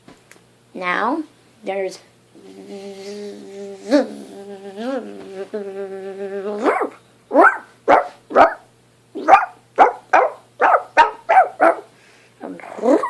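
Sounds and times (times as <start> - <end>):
person imitating bee buzzing: 2.3 - 7.0
person imitating dog barks: 2.4 - 8.6, 9.2 - 11.8.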